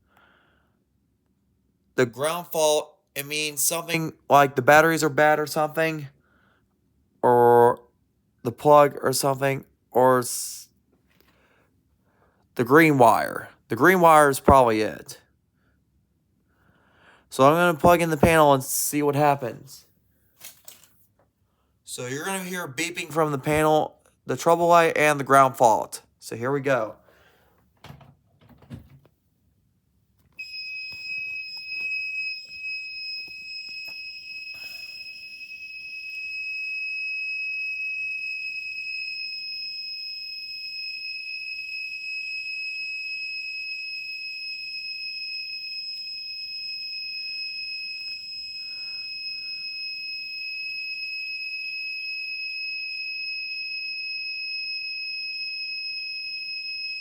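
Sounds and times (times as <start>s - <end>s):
alarm panel high-pitched tone: 30.4s - 57.0s.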